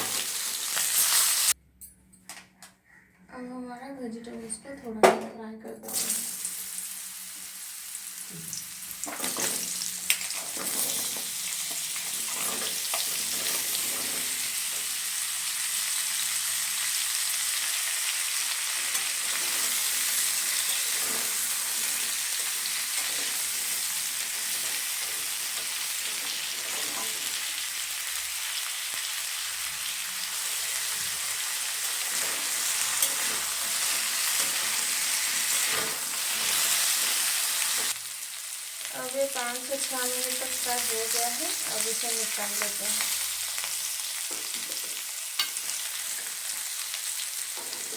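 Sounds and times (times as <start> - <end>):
vegetables sizzling in hot oil: 0.0 - 1.6, 5.9 - 47.9.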